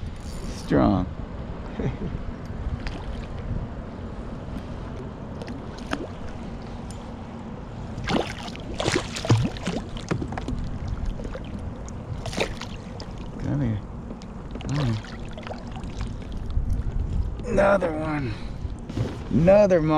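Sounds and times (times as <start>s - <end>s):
sharp splashes and knocks: 2.8s - 3.4s, 5.4s - 6.4s, 8.0s - 13.4s, 14.4s - 16.6s
water moving around a kayak: 7.8s - 13.5s, 14.3s - 17.4s
wind on microphone: 15.8s - 17.5s.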